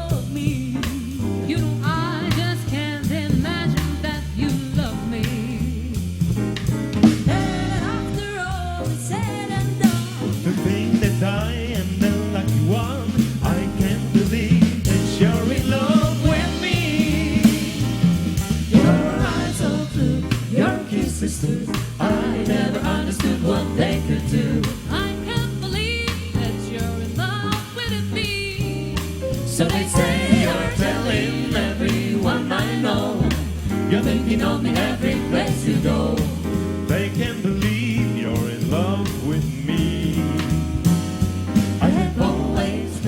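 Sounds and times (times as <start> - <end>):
bass: 0.0 - 43.0
drums: 0.0 - 43.0
group singing: 7.0 - 27.6, 29.4 - 41.0, 41.6 - 43.0.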